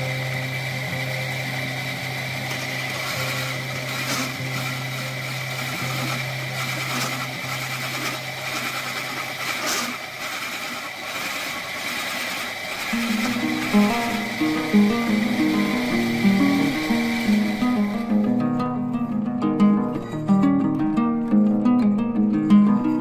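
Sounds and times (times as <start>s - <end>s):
power tool motor whining: 0.0s - 18.4s.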